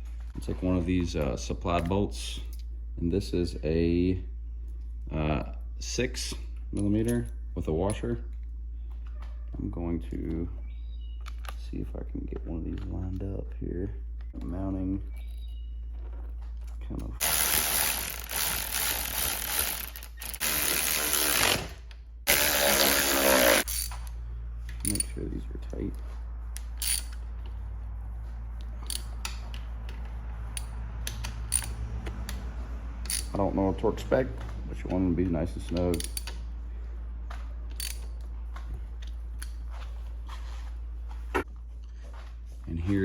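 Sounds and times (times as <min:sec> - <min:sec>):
power tool motor whine: 0:17.2 - 0:23.8
hand tools clicking and knocking: 0:24.7 - 0:25.3, 0:26.5 - 0:27.2, 0:28.7 - 0:33.4, 0:34.8 - 0:36.4, 0:37.7 - 0:38.3.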